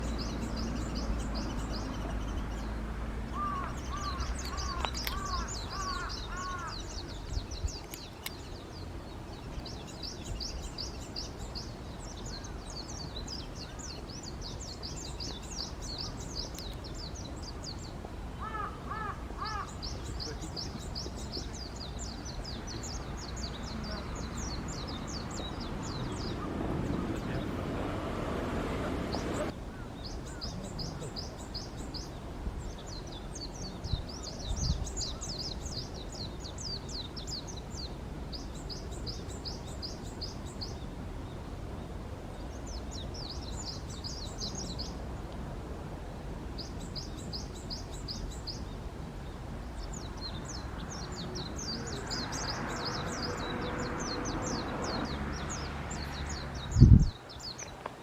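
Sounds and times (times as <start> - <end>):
small birds chirping: 0.0 - 45.5, 46.4 - 58.0
crow cawing: 3.4 - 6.8, 18.4 - 19.7.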